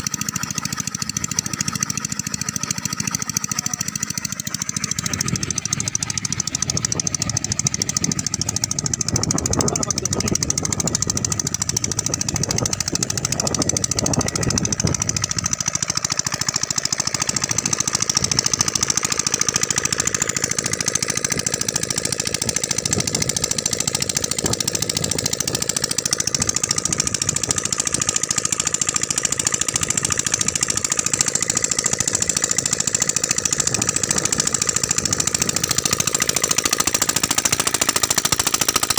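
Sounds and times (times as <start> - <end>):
diesel engine knocking: 0.0 - 38.9.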